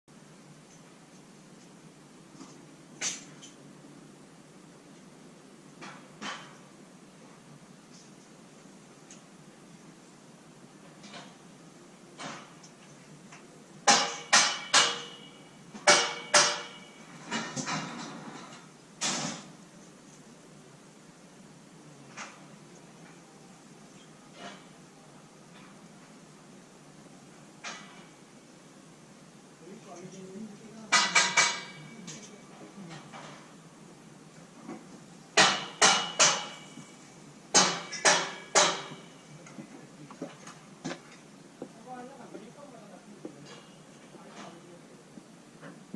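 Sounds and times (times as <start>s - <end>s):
hammer striking metal: 13.9s - 17.0s, 30.9s - 31.9s, 35.4s - 36.9s, 37.5s - 39.2s.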